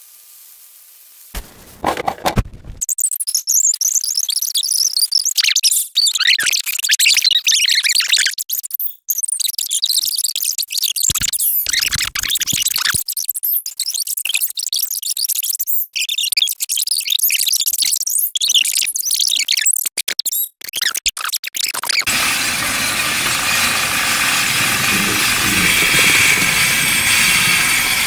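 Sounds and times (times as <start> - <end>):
sped-up sound effects jumble: 22.1 - 28.0.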